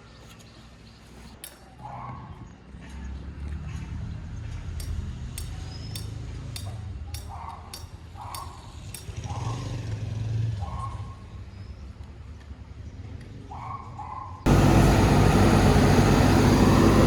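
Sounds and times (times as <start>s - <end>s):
steady low rumble: 14.5s - 17.0s.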